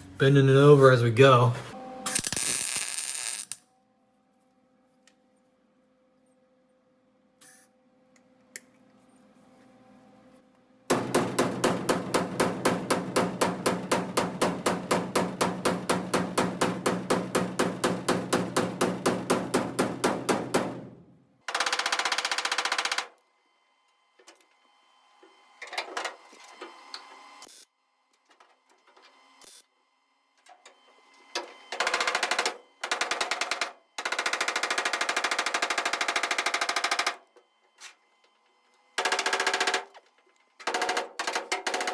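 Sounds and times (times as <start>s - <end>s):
sheet-metal welding crackle: 2.1s - 3.6s.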